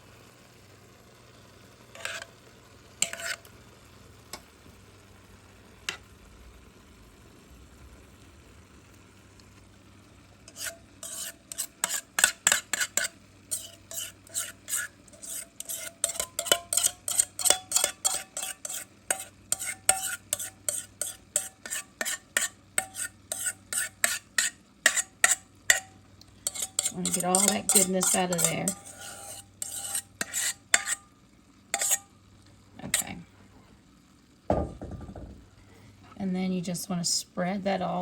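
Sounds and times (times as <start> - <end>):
utensil scraping a mixing bowl: 2.0 - 2.3, 3.0 - 3.5, 10.5 - 31.0, 31.8 - 32.0, 32.8 - 33.2.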